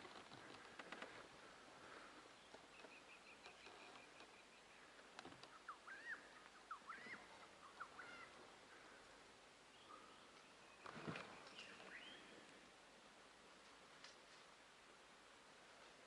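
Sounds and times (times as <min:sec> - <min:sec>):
looping bird chirps: 0:05.4 - 0:08.4.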